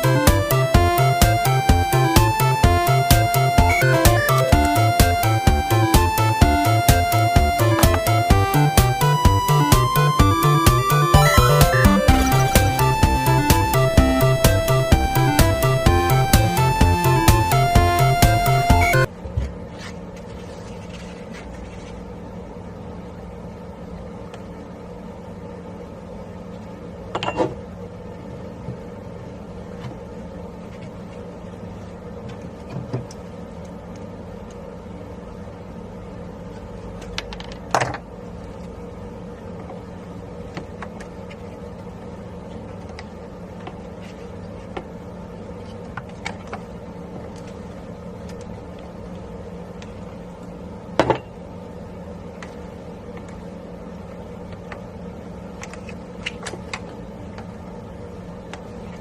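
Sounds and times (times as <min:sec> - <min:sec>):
steady mechanical hum: 0:00.0 - 0:59.0.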